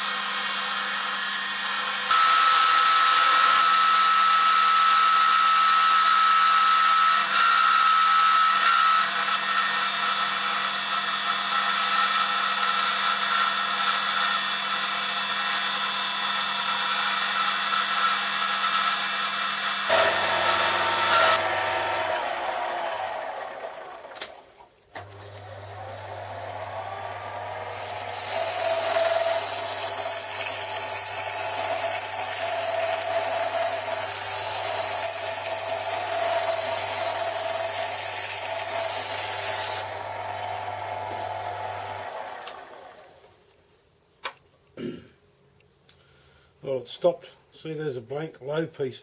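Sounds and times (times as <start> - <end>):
lathe motor hum: 0.2 - 24.4, 25.0 - 43.2
lathe cutting hiss: 27.7 - 39.9.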